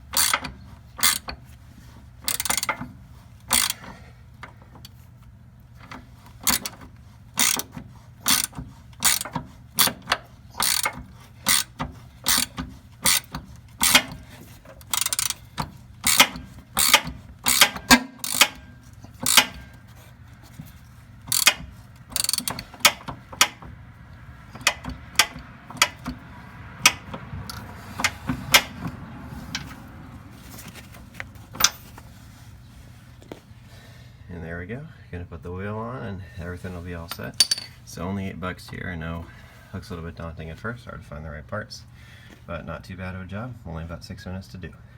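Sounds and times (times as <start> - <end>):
socket ratchet clicking: 0.1 - 1.3, 2.3 - 2.8, 3.5 - 3.8, 6.4 - 6.8, 7.4 - 14.2, 14.8 - 18.6, 19.2 - 19.6, 21.3 - 23.7, 24.6 - 26.2, 26.8 - 28.8.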